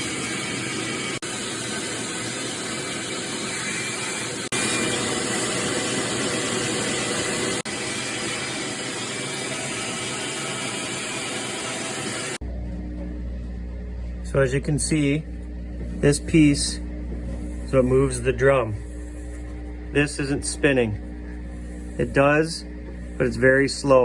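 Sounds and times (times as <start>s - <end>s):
shop vac running: 0.0s - 24.0s.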